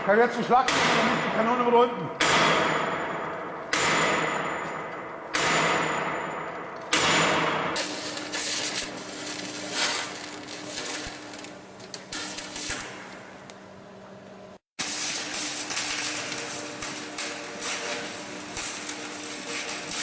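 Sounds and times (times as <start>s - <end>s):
hammer ringing on steel: 0.7s - 7.7s.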